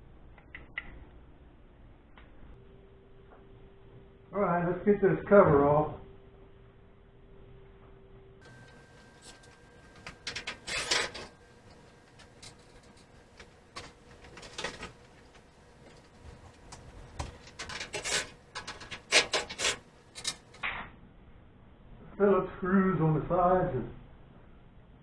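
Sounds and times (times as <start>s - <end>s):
rubbing and scraping handling noises: 8.5s - 20.6s.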